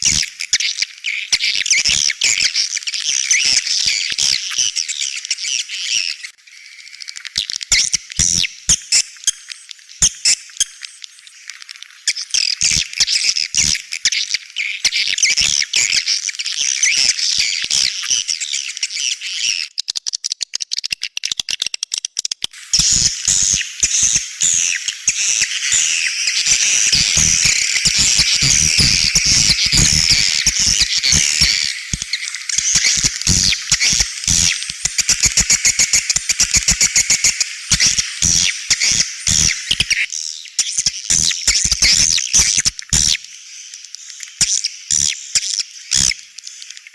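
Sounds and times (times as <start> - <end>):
high fast bird chirps: 22.0 - 46.9.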